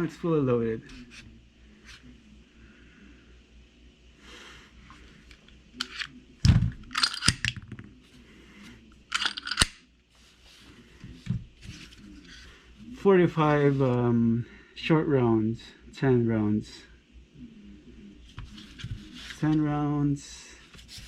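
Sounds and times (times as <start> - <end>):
magazines and cartridges clicking: 6.9 - 7.6, 9.1 - 9.8.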